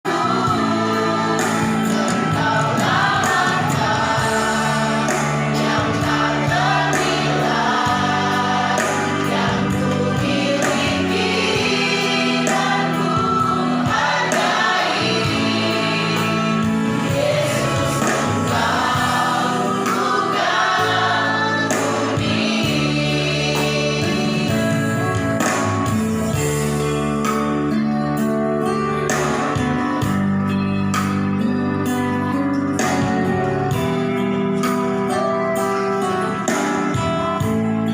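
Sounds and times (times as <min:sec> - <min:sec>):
choir singing gospel: 0:00.0 - 0:26.8.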